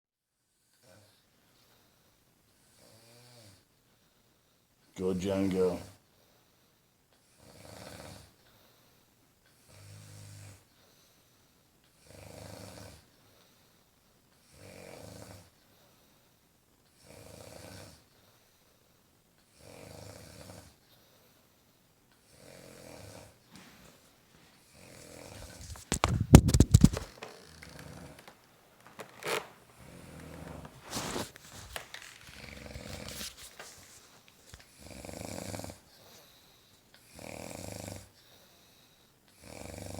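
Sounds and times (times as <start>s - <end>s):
woman snoring: 29.1s - 33.2s, 34.8s - 35.9s, 37.1s - 38.2s, 39.4s - 39.9s.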